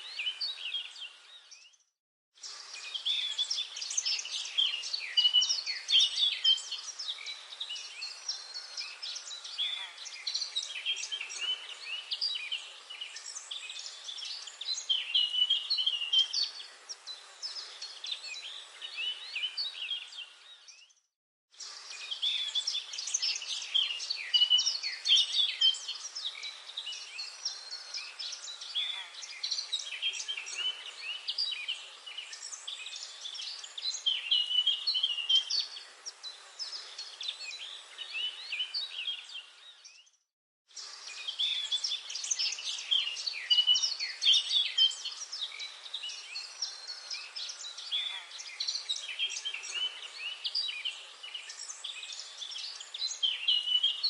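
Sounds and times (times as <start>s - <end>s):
birds chirping and singing: 0.0s - 1.8s, 2.4s - 21.0s, 21.6s - 40.2s, 40.8s - 54.0s.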